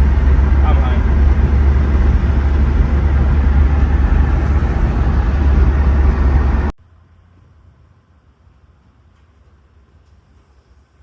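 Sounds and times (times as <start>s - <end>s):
pickup engine rumble: 0.0s - 6.8s.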